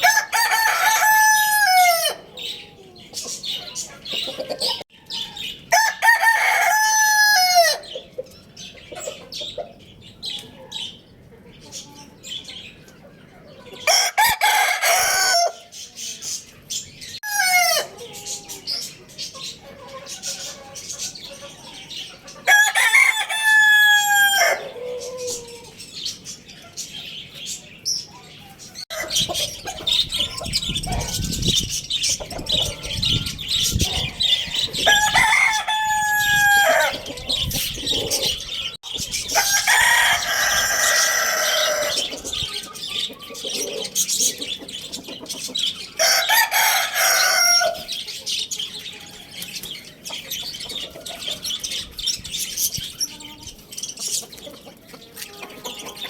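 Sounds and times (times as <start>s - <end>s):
roosters crowing: 0.0s - 8.1s, 13.7s - 16.1s, 17.0s - 26.0s, 28.7s - 44.2s, 45.5s - 48.2s
chicken clucking calls: 0.0s - 56.0s.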